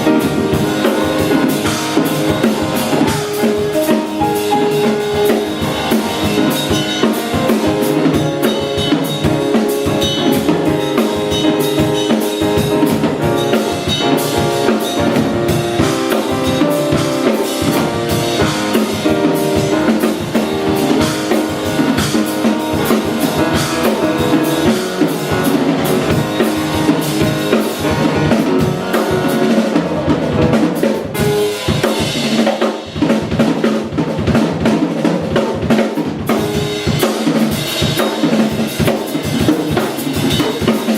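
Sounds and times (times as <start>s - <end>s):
held melodic notes: 0.0s - 32.2s
drum kit playing a driving beat: 0.0s - 40.9s.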